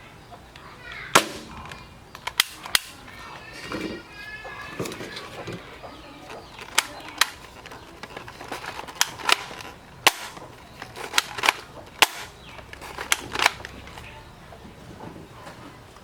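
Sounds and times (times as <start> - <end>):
toy dart blaster shots: 1.2 - 1.6, 2.2 - 3.0, 8.9 - 13.7.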